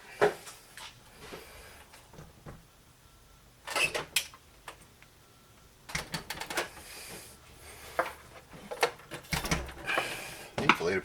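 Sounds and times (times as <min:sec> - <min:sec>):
computer parts clicking and knocking: 0:05.9 - 0:06.7.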